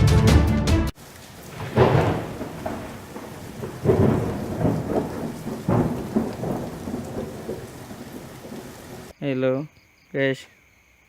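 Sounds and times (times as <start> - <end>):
thunder rumbling: 1.0 - 9.1
rain hiss: 1.0 - 9.2.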